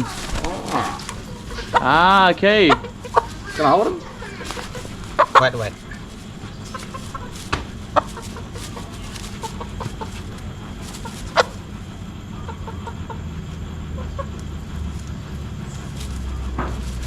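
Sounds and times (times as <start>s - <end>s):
rooster clucking: 0.0s - 17.0s.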